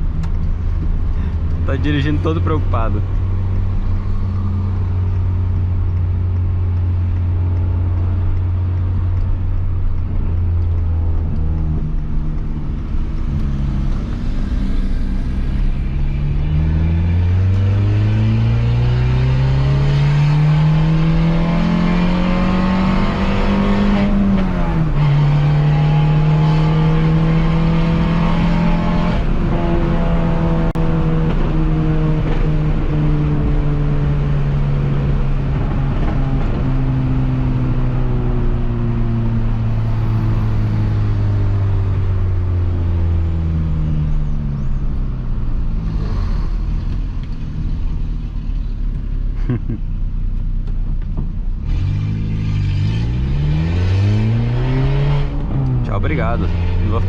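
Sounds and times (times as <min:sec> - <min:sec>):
car engine accelerating: 0:00.0 - 0:57.0.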